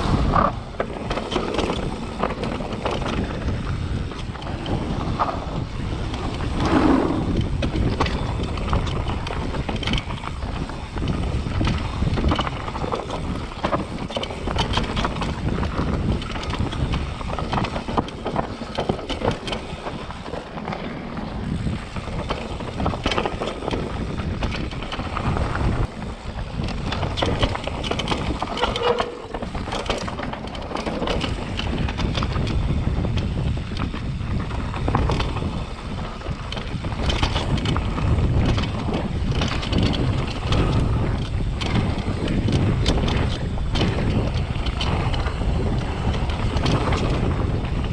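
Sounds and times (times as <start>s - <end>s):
bike chain and frame rattling: 0.0s - 47.9s
bike tyres rumbling on dirt: 0.0s - 47.9s
wind on microphone: 0.0s - 47.9s.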